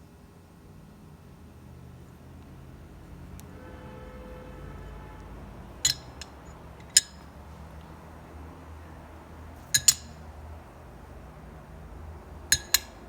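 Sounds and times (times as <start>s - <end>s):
metal parts clinking: 5.8s - 7.3s, 9.6s - 10.2s, 12.5s - 13.0s.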